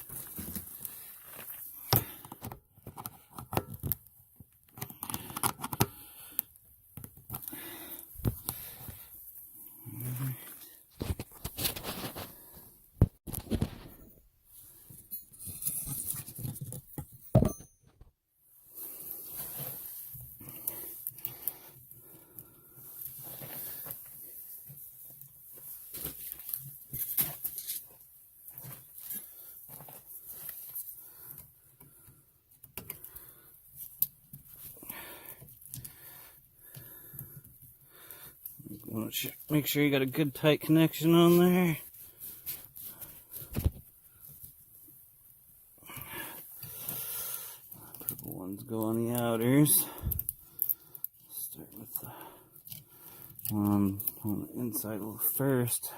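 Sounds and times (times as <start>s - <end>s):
scraping and rustling of wires: 0.0s - 17.2s, 18.5s - 55.9s.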